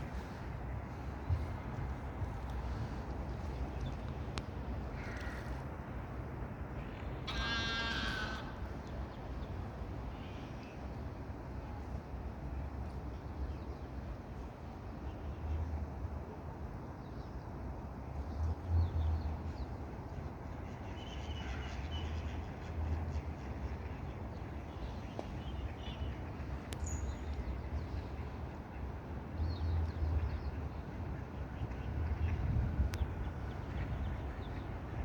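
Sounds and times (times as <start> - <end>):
steady low rumble: 0.0 - 7.3, 24.8 - 35.0.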